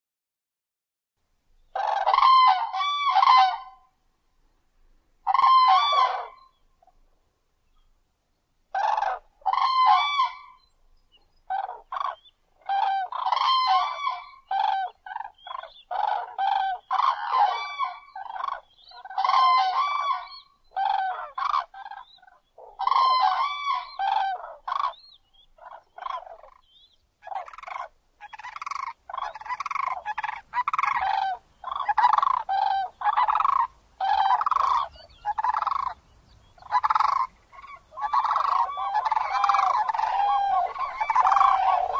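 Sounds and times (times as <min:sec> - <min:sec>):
crane honking calls: 0:36.6 - 0:41.9.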